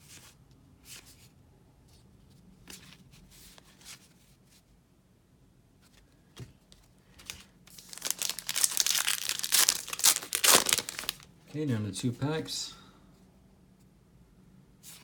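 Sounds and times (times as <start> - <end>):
cards being flipped through: 7.2 - 11.2
plastic wrapper crinkling: 7.2 - 11.3.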